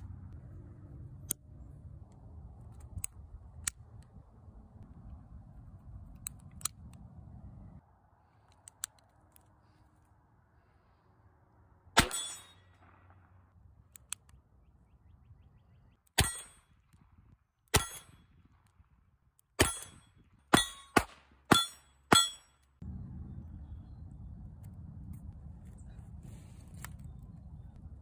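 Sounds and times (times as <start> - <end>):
low rumble: 0.0 - 8.2, 22.8 - 28.0
revolver gunshots: 12.0 - 13.4.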